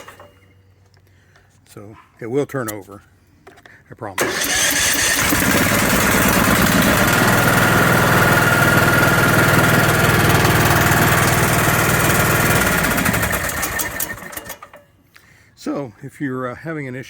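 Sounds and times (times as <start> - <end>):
lawn tractor engine running: 0.0 - 0.5, 4.2 - 14.9.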